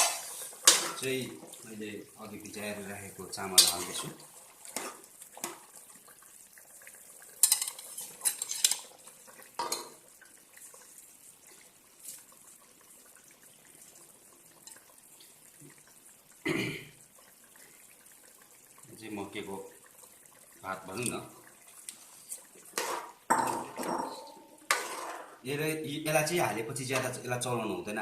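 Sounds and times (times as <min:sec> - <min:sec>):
metal utensils clinking on pot: 0:00.0 - 0:01.1, 0:03.5 - 0:04.1, 0:07.4 - 0:09.0, 0:09.6 - 0:10.0.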